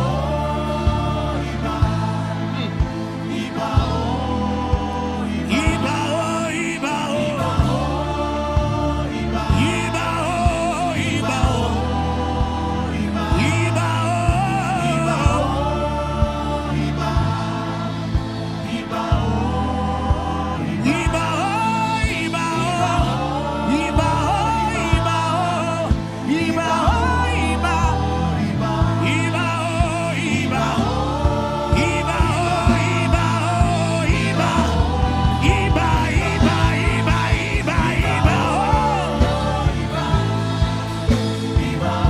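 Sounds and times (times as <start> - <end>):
bass and keyboard notes: 0.0 - 42.0
steady drumbeat: 7.4 - 42.0
person singing: 18.7 - 42.0.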